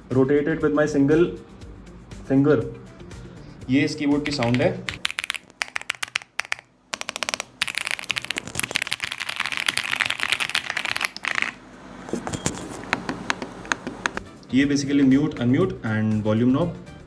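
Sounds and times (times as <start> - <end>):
mechanical keyboard typing: 4.2 - 11.6.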